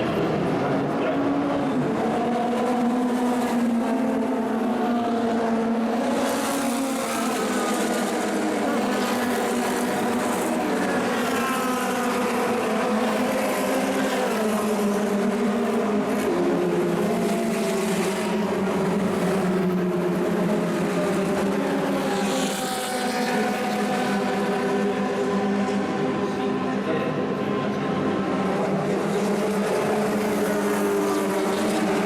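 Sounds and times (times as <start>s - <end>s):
race car engines revving: 0.0s - 32.0s.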